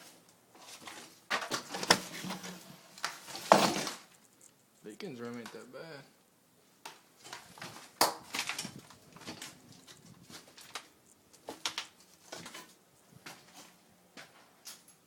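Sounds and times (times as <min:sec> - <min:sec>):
footsteps crunching on debris: 0:06.9 - 0:14.8.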